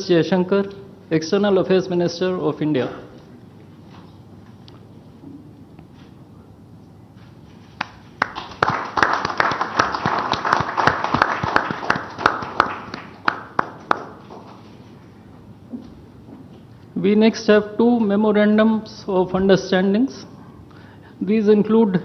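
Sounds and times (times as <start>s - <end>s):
audience applauding: 7.8s - 14.6s.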